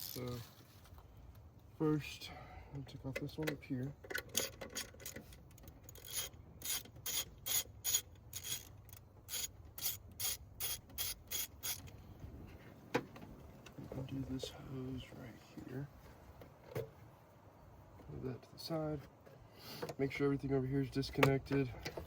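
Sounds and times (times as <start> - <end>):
hand ratchet clicking: 5.9 - 11.9.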